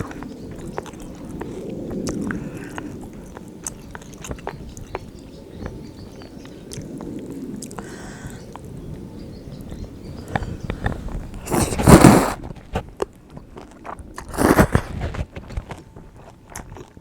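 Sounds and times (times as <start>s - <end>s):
person chewing noodles: 0.0s - 5.7s, 10.3s - 17.0s.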